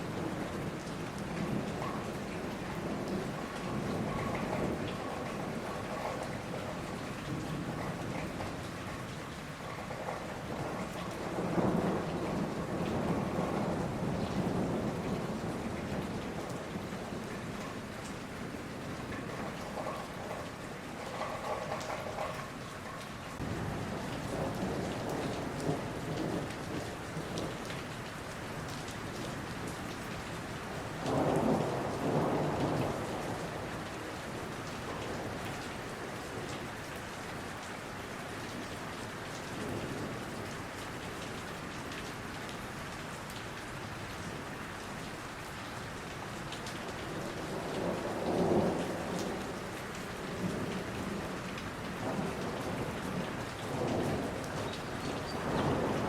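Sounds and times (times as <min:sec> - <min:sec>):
steady rain: 0:00.0 - 0:56.0
thunder rolling: 0:50.3 - 0:56.0.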